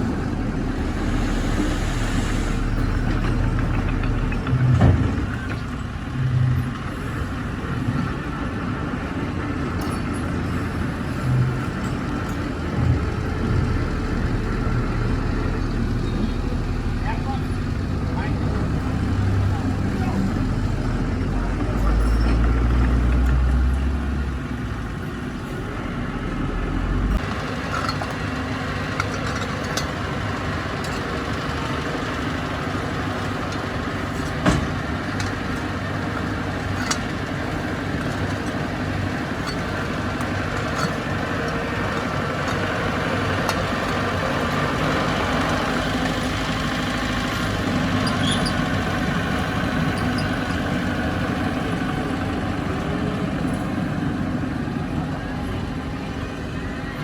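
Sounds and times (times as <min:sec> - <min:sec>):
heavy diesel engine running: 0:00.0 - 0:57.0
metallic knocks and clanks: 0:02.6 - 0:05.8, 0:27.2 - 0:44.7.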